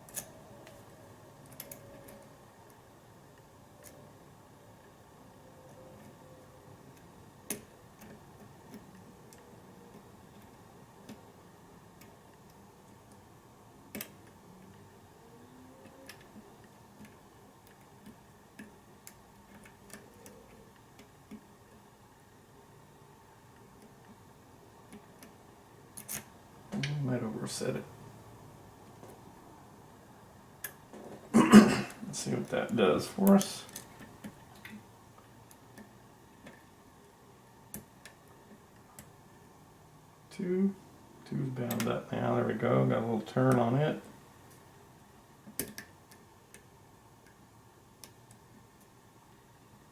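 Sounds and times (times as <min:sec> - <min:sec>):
lock pick metallic clicks: 0:00.0 - 0:00.8, 0:26.0 - 0:26.3, 0:45.5 - 0:46.6
metallic lock picking clicks: 0:00.0 - 0:00.8.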